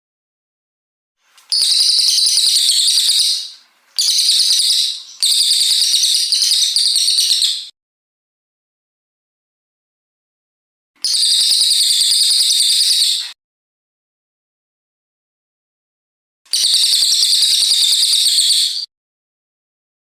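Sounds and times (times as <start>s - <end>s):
songbird warbling: 1.4s - 7.7s.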